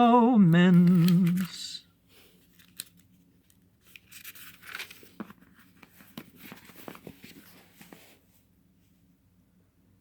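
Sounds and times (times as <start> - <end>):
thin pages rustling: 0.7 - 1.6, 2.2 - 8.4.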